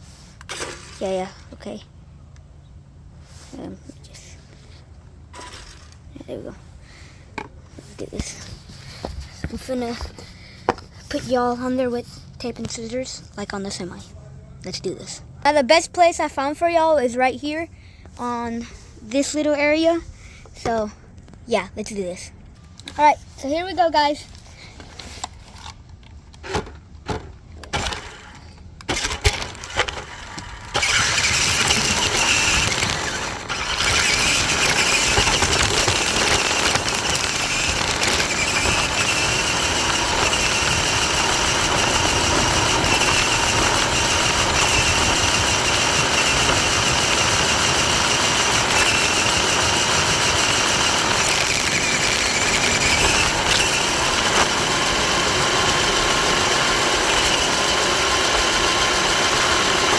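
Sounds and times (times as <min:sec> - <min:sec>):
toy truck rattling: 0:05.3 - 0:06.1, 0:25.2 - 0:59.9
toy truck motor whining: 0:05.4 - 0:07.2, 0:26.4 - 0:59.9.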